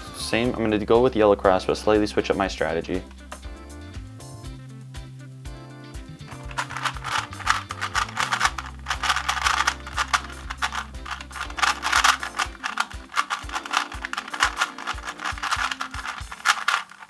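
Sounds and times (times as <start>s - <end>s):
puzzle cube plastic clicks: 6.3s - 17.0s.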